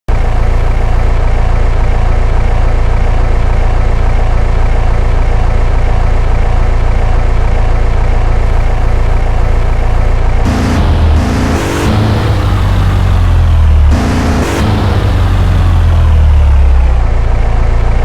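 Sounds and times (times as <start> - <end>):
car engine idling: 0.2 - 18.0.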